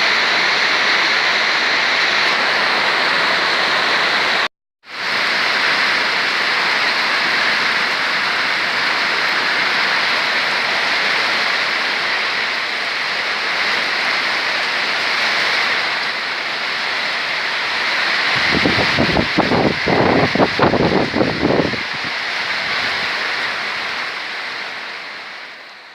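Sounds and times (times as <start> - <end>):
heavy rain pouring: 0.0 - 25.9
wind buffeting microphone: 18.2 - 23.1.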